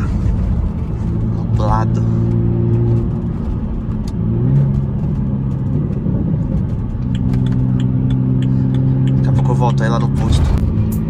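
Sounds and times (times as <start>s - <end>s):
car engine and exhaust: 0.0s - 11.0s.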